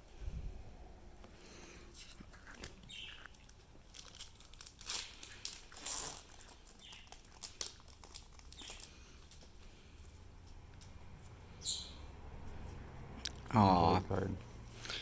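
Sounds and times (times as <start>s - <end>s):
foil wrapper crinkling: 2.0s - 9.6s.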